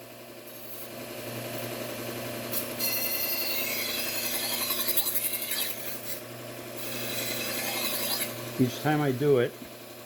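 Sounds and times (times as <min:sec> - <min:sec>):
motor hum: 0:00.0 - 0:10.0
knife grinding on belt sharpener: 0:00.4 - 0:01.0, 0:02.5 - 0:08.5.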